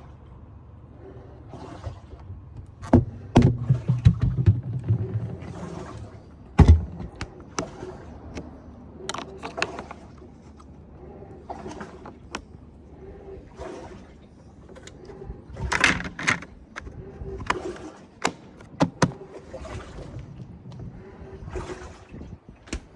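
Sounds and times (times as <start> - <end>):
refrigerator door clunks and knocks: 2.8 - 5.6, 6.6 - 7.2.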